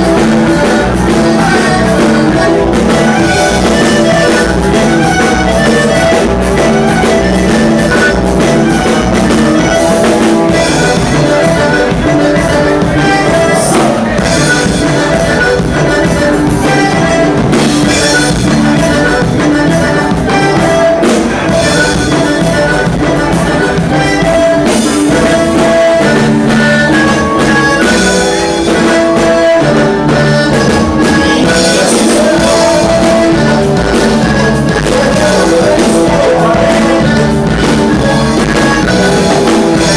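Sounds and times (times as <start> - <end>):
drum kit beat: 0.0 - 39.9
loud band music: 0.0 - 39.9
person singing: 0.0 - 39.9.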